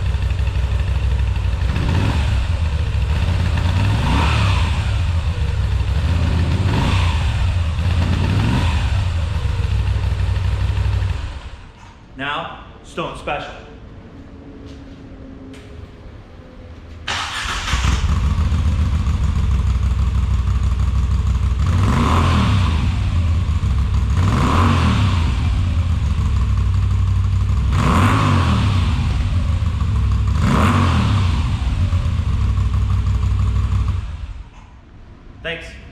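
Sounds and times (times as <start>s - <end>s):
motorcycle engine revving: 0.0s - 11.8s, 17.1s - 34.5s.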